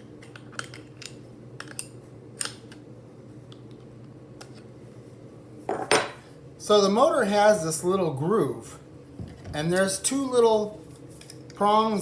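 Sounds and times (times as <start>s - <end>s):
faint steady hum: 0.0s - 12.0s.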